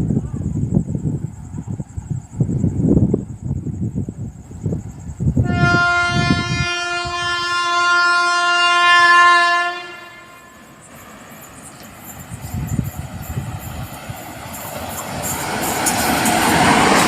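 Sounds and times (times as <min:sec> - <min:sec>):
locomotive horn blast: 0:05.4 - 0:10.7.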